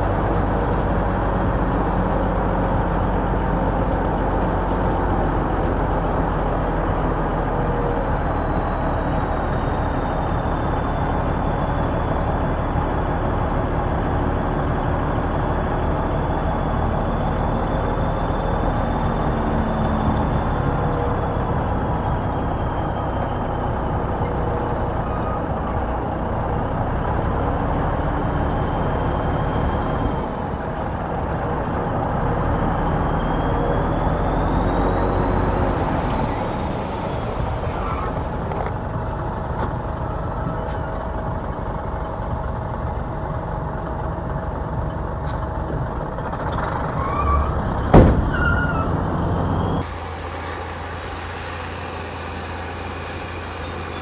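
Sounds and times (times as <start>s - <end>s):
heavy diesel engines running: 0.0s - 54.0s
faint high whine: 49.8s - 54.0s.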